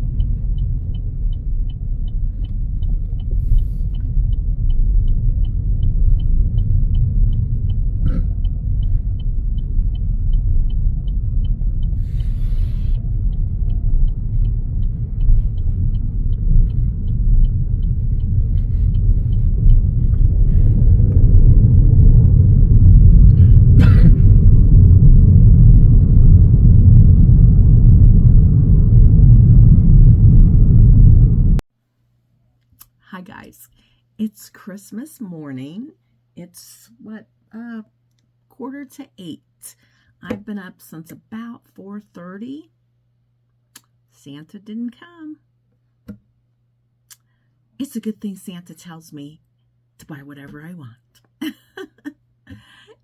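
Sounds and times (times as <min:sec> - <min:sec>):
car road and engine rumble: 0:00.0 - 0:31.6
faint high ticking: 0:00.0 - 0:31.6.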